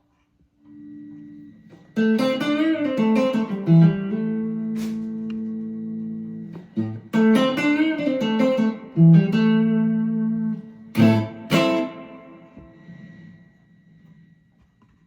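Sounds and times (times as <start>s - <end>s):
electric guitar notes: 0.6s - 14.2s
electric guitar strummed chords: 0.7s - 13.3s.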